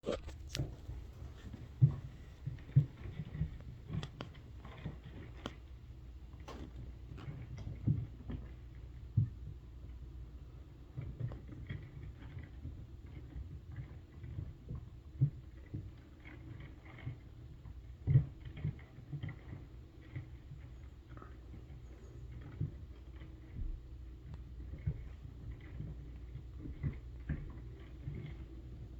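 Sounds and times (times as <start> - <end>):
taps and scratching in ceiling: 0.0 - 10.1
low steady hum: 0.0 - 10.8.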